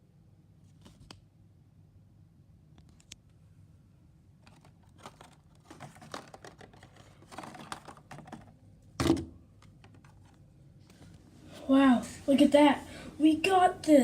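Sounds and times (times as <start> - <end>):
objects handled clicking and rustling: 4.4 - 11.1.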